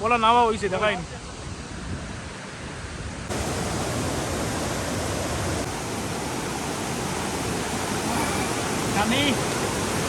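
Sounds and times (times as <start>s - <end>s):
waterfall rushing: 3.3s - 10.0s.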